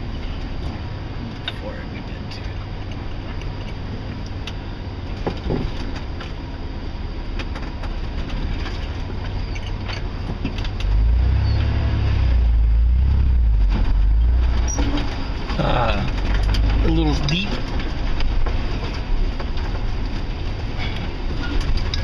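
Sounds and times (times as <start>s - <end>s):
truck engine rumble: 0.0s - 22.0s
body knocks and rattles: 2.4s - 6.5s, 7.2s - 11.0s, 13.6s - 22.0s.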